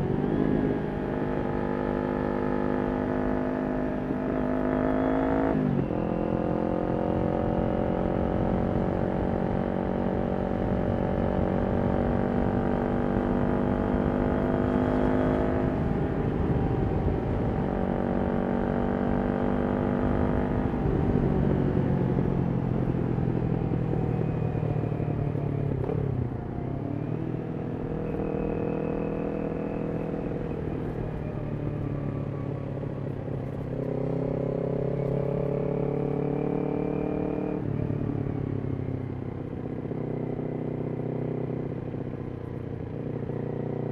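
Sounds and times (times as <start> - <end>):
motorcycle engine running: 0.0 - 43.9.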